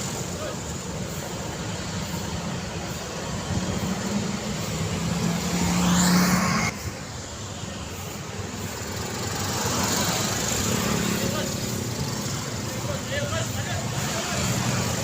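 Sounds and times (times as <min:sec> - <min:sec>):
vehicle passing close: 0:00.0 - 0:07.1
road traffic engine hum: 0:00.0 - 0:15.0.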